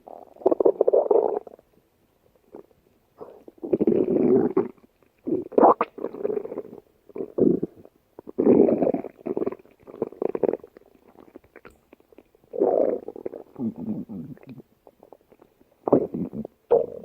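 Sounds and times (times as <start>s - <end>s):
cartoon stomach growling: 15.9s - 17.0s.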